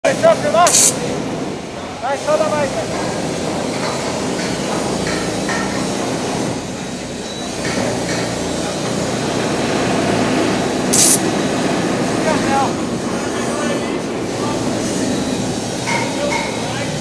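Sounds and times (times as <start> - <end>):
machinery noise: 0.0 - 17.0
stud weld hiss: 0.7 - 1.0, 10.9 - 11.2.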